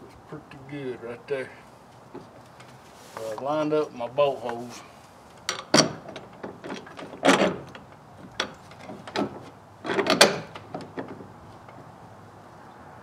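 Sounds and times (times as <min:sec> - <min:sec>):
metal bolt clinks and knocks: 0:05.4 - 0:11.8.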